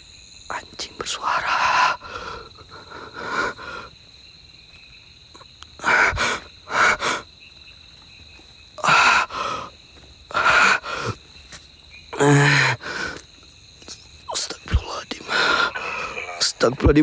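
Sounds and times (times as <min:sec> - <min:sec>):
person breathing hard: 0:01.2 - 0:04.0, 0:05.8 - 0:07.3, 0:08.8 - 0:11.3, 0:12.2 - 0:14.0, 0:14.7 - 0:16.4.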